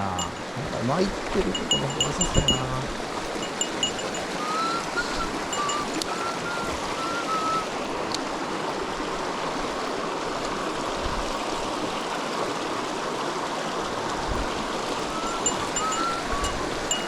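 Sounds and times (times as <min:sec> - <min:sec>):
stream water rushing: 0:00.0 - 0:17.0
short whistled notes: 0:03.8 - 0:07.7, 0:15.1 - 0:17.0.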